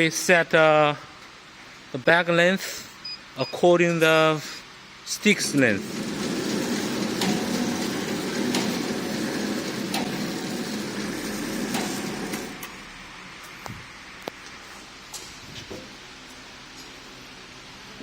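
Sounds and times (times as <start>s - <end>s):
machine mechanical hum: 0.0s - 18.0s
machine clacking: 5.5s - 12.8s.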